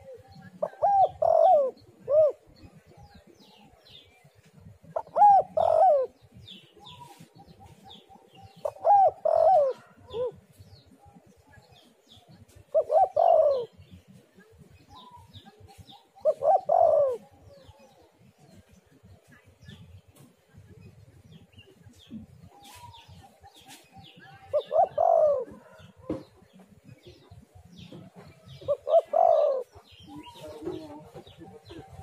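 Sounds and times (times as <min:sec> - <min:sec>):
dove cooing: 0:00.0 - 0:03.8, 0:04.9 - 0:11.3, 0:12.7 - 0:14.0, 0:15.0 - 0:18.1, 0:24.3 - 0:26.2, 0:27.0 - 0:32.0
small birds chirping: 0:00.0 - 0:32.0.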